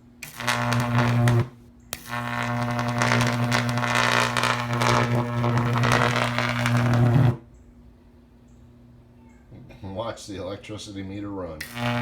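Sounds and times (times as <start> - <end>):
electric arc buzzing and crackling: 0.2 - 7.5, 11.6 - 12.0.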